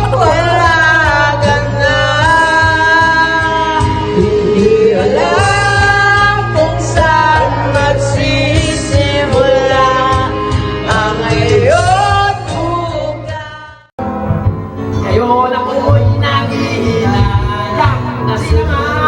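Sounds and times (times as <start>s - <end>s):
backing track: 0.0s - 19.0s
person singing long notes: 14.9s - 19.0s.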